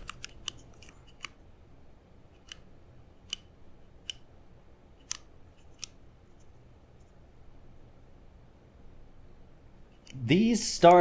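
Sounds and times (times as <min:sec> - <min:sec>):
soft keyboard keypress clicks: 0:00.0 - 0:01.4.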